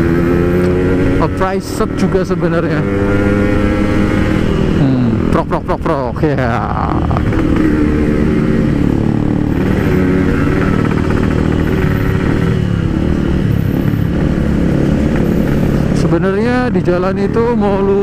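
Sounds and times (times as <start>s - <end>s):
two-stroke motorcycle engine running: 0.0s - 18.0s.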